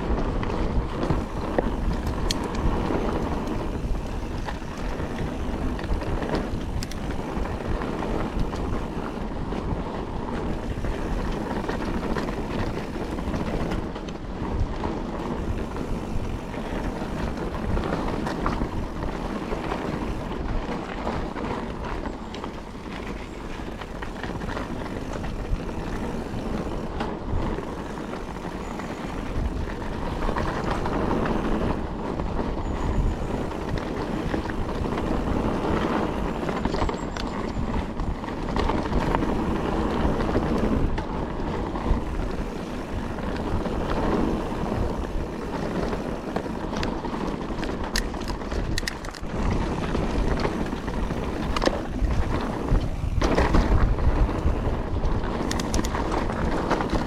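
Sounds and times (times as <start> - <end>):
bike rattling and knocking: 0.0 - 57.0
tyres rolling over dirt and stones: 0.0 - 57.0
wind noise on microphone: 0.0 - 57.0.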